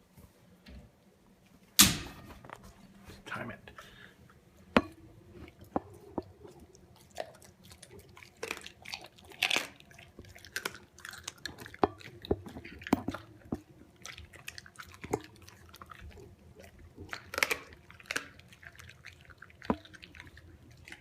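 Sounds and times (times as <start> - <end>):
animal chewing and crunching: 5.2 - 21.0.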